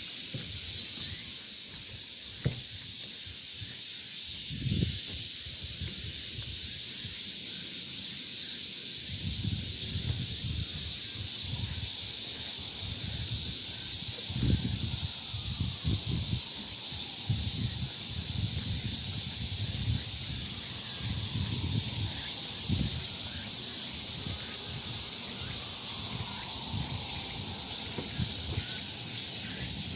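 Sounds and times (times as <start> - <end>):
insects chorus hissing: 0.0 - 29.9
wind rumble on microphone: 4.4 - 7.2, 9.1 - 29.9.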